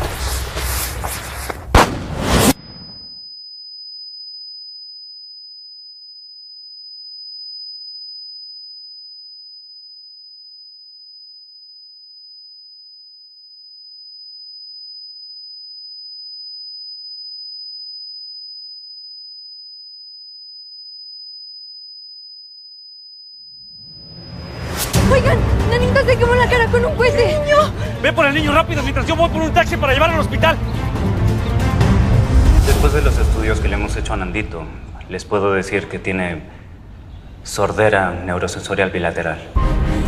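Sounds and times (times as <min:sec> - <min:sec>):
high-pitched ringing tone: 0:02.6 - 0:24.8.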